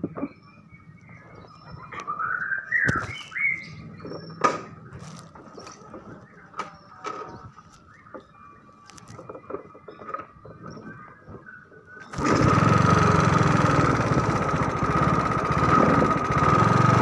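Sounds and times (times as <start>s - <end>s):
small engine rattling: 12.0s - 17.0s.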